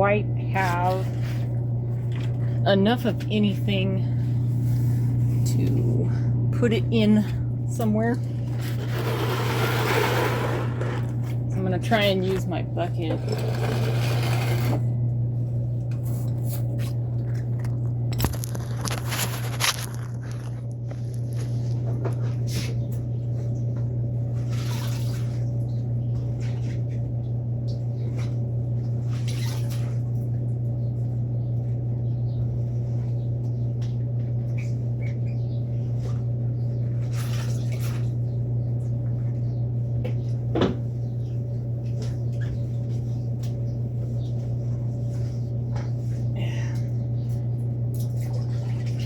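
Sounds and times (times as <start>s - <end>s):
low electrical hum: 0.0s - 49.0s
handling noises: 16.3s - 22.5s.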